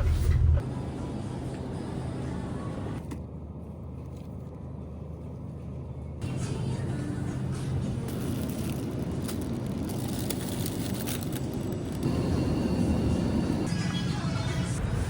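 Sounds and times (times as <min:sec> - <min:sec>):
vehicle rumble: 0:00.0 - 0:15.0
street noise: 0:05.7 - 0:15.0.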